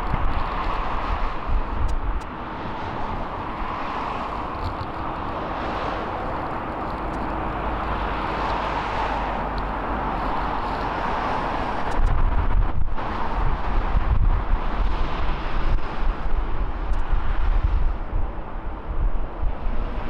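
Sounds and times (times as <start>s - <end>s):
distant jet engines rushing: 0.0s - 20.0s
wind buffeting microphone: 0.0s - 20.0s.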